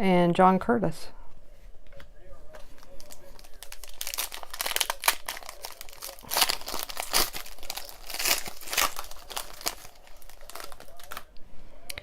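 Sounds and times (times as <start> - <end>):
plastic wrapper crinkling: 2.5 - 11.3
wrapper tearing: 2.7 - 11.3.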